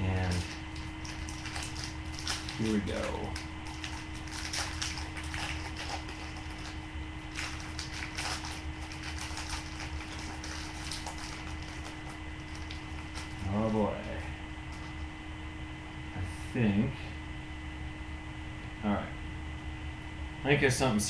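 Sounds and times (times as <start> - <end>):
steady electrical hum: 0.0 - 21.0
wrapper crinkling and tearing: 0.1 - 13.5.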